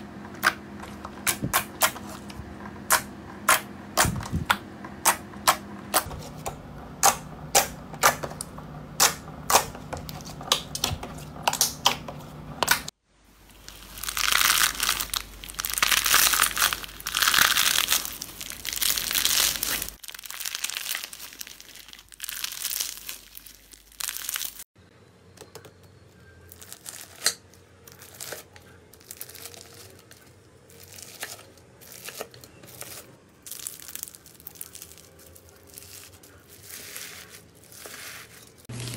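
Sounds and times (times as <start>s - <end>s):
crunchy slime crackling: 13.5s - 24.7s, 26.5s - 38.9s.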